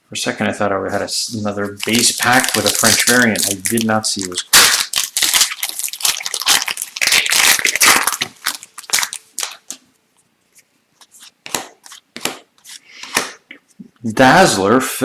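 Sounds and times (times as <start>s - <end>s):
foil wrapper crinkling and tearing: 1.4s - 9.8s.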